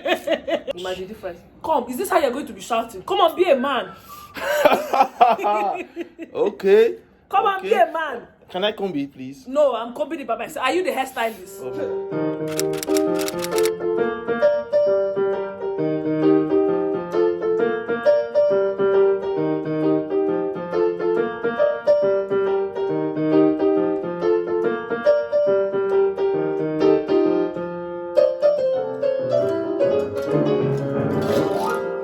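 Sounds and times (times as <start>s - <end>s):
gentle piano melody: 11.8s - 32.0s.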